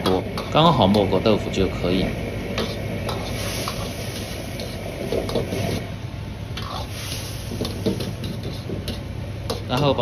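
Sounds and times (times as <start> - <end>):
sauce boiling and sizzling: 1.9 - 9.8.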